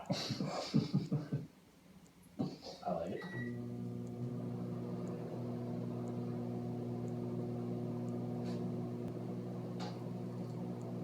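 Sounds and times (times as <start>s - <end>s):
microwave oven humming: 3.2s - 11.0s
faint ticking: 3.4s - 11.0s.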